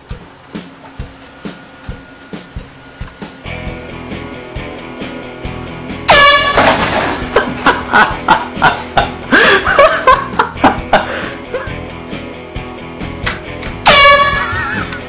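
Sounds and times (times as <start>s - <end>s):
loud uneven pulsing sound: 0.0s - 10.0s
background music with steady beat: 0.0s - 15.0s
air horn blast: 6.0s - 7.2s, 13.8s - 14.9s.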